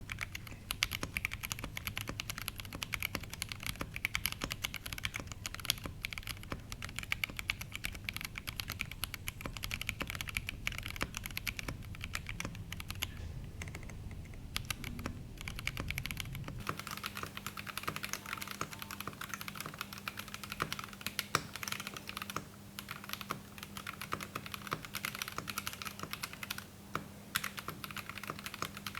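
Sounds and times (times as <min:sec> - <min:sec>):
faint steady hum: 0:00.0 - 0:28.9
mechanical keyboard typing: 0:00.0 - 0:28.9
low background rumble: 0:04.8 - 0:16.8.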